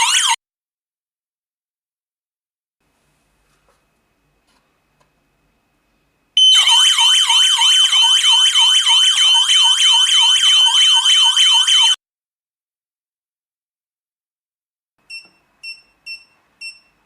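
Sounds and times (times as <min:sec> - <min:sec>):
alarm siren warbling: 0:00.0 - 0:00.4, 0:06.4 - 0:12.0
steady high tone: 0:06.4 - 0:12.0.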